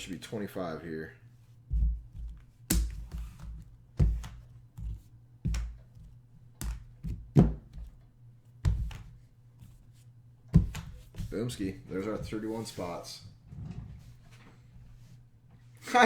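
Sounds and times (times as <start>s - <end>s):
light thunks and taps on desk: 8.6s - 9.1s, 10.5s - 11.3s.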